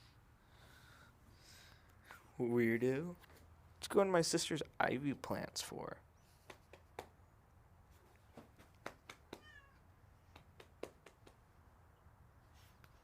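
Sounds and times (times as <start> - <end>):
cat meowing faintly: 9.3 - 9.9.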